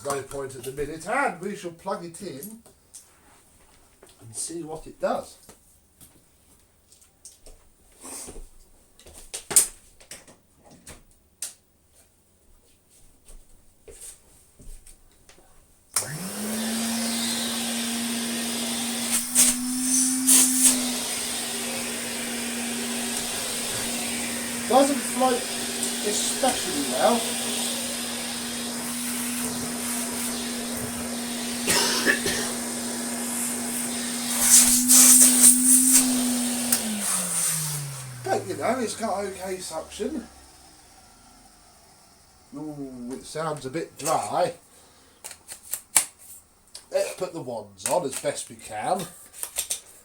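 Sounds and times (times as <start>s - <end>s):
vacuum cleaner motor running: 16.0s - 44.2s.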